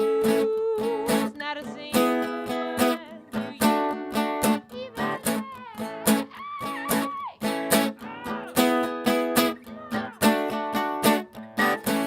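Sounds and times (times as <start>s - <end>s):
acoustic guitar strummed chords: 0.0s - 12.0s.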